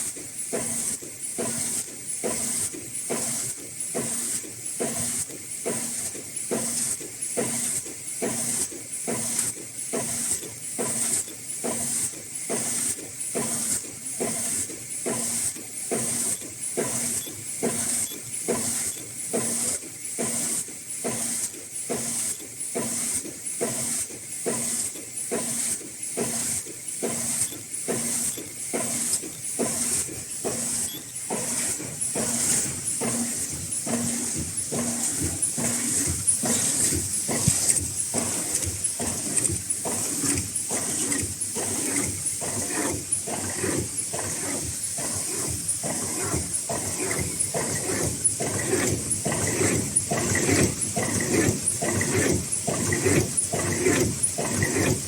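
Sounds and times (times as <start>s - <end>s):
machine hissing and knocking: 0.0s - 55.0s.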